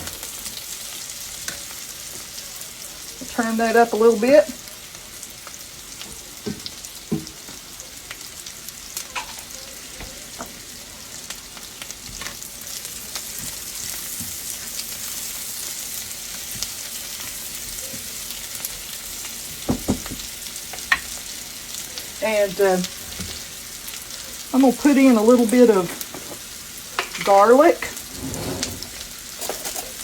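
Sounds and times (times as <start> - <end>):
vegetables sizzling in a skillet: 0.0 - 30.0.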